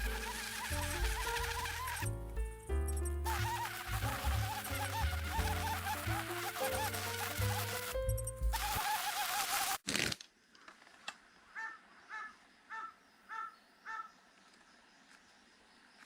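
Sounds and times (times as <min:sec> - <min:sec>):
crow cawing: 0:11.5 - 0:14.2.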